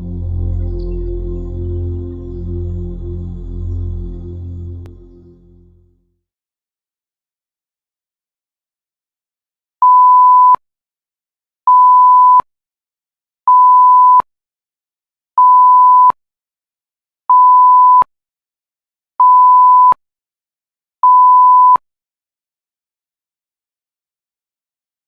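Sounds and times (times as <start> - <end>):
censor bleep tone: 9.8 - 10.6, 13.5 - 14.2, 17.3 - 18.1, 19.2 - 20.0, 21.1 - 21.8
click at bleep end: 11.7 - 12.4, 13.5 - 14.2, 17.3 - 18.1, 19.2 - 20.0, 21.1 - 21.8.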